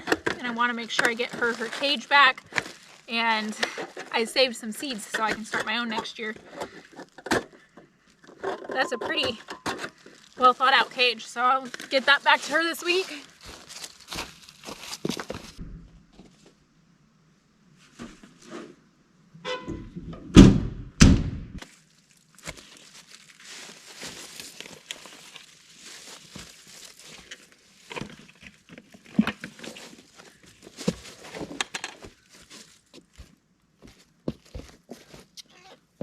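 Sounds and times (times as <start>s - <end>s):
rustling: 0.0s - 16.6s, 21.6s - 35.9s
heavy thumps: 15.6s - 16.3s, 19.7s - 21.6s.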